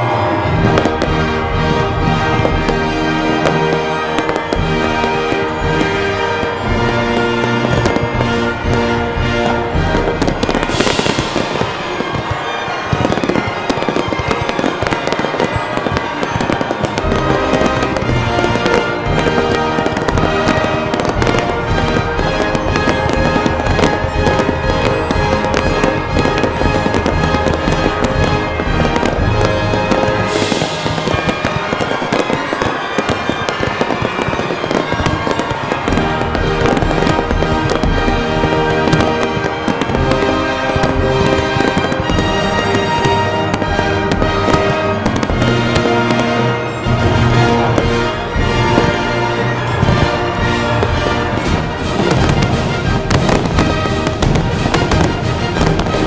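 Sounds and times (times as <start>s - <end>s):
fireworks bursting and crackling: 0.0s - 56.0s
music playing: 0.0s - 56.0s
hissing firework burst: 9.8s - 18.5s, 25.4s - 45.4s.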